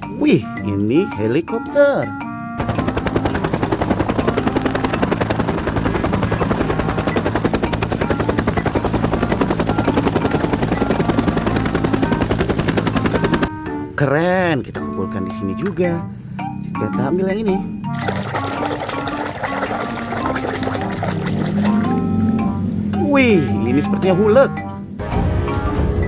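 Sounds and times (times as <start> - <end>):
helicopter engine drone: 2.4 - 13.5, 17.6 - 25.0
helicopter rotor blades chopping: 2.4 - 13.5, 17.9 - 25.0.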